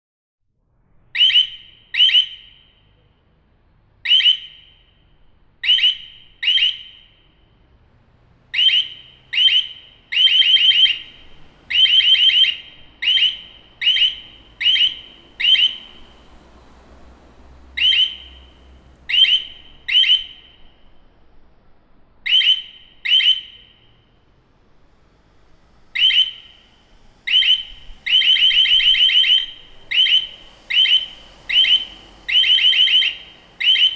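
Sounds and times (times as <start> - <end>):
building alarm blasts: 1.2 - 2.8, 4.0 - 7.5, 8.5 - 16.8, 17.8 - 20.8, 22.2 - 24.1, 25.9 - 33.9.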